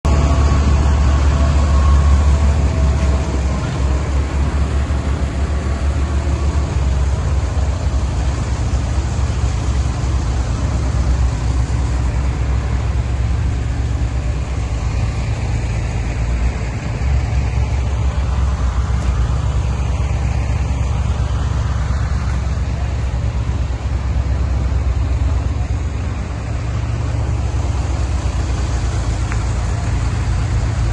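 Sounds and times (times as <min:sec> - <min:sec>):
air compressor diesel engine running: 0:00.0 - 0:30.9.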